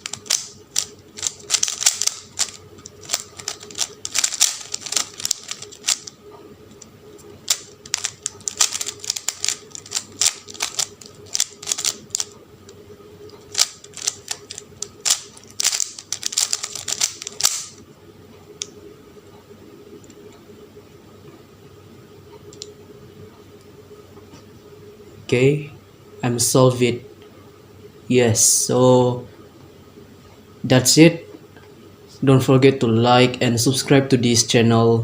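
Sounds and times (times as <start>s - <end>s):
puzzle cube plastic clicks: 0.0s - 6.2s, 7.5s - 12.3s, 13.5s - 17.8s.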